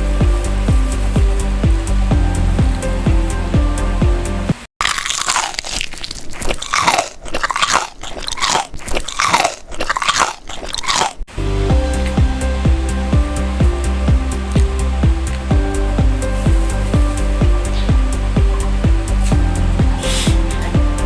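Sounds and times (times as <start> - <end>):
deep kick drum beat: 0.0 - 4.6, 11.5 - 21.0
sustained chords: 0.0 - 4.6, 11.3 - 21.0
close-up chewing sandwich: 4.8 - 11.3.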